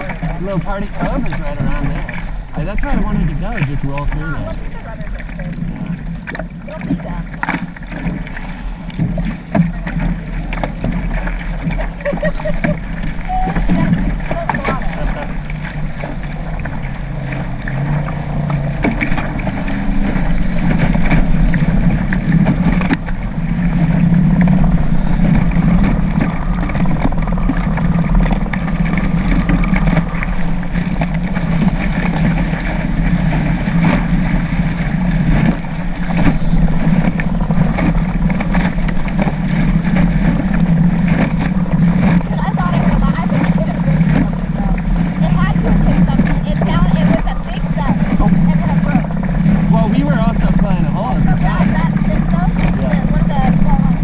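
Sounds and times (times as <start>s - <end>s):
water rushing past boat: 0.0s - 54.0s
wind rushing: 12.8s - 54.0s.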